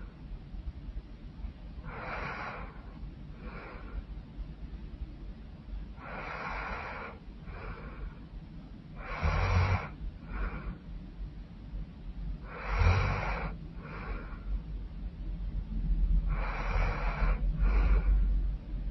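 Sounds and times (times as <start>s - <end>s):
woman snoring: 1.9s - 2.8s, 6.0s - 7.9s, 9.0s - 10.7s, 12.5s - 14.4s, 16.3s - 18.0s.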